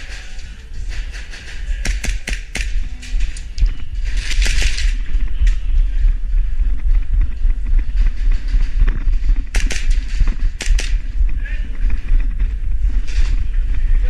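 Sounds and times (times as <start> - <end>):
sharp cracks: 0.0 - 5.6, 9.4 - 11.4
microphone handling rumble: 0.0 - 14.0.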